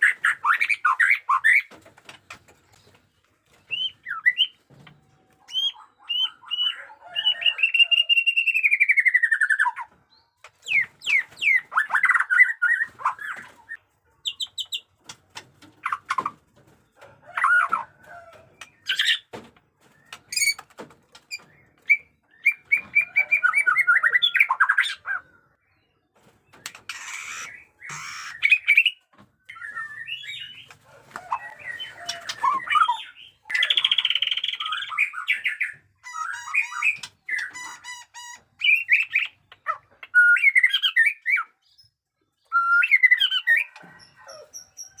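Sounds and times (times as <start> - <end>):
bird clicking and rasping notes: 14.4 - 19.2, 26.5 - 29.0
bird singing whistled song: 40.1 - 41.5, 42.4 - 43.8.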